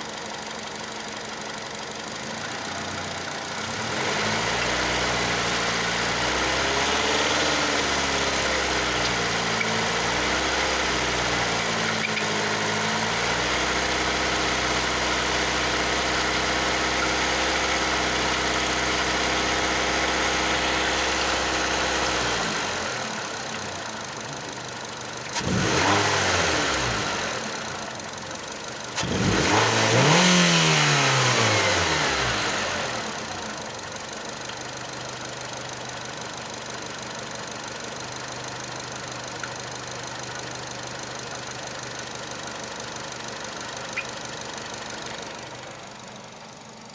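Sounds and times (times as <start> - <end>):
engine revving and idling: 0.0 - 46.9
engine scraping squeaking ticking: 3.9 - 5.8, 7.8 - 22.1, 39.2 - 40.6, 43.6 - 45.6.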